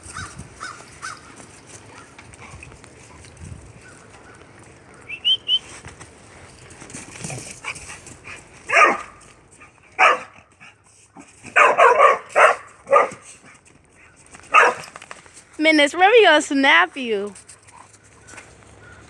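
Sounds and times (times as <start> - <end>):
dog barking: 8.7 - 9.2, 10.0 - 10.4, 11.5 - 13.2, 14.5 - 14.9.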